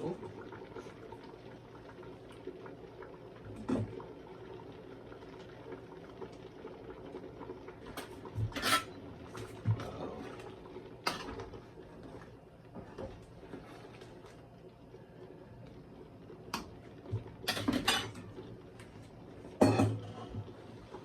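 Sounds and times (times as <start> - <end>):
metal utensils clinking on pot: 8.5 - 9.0.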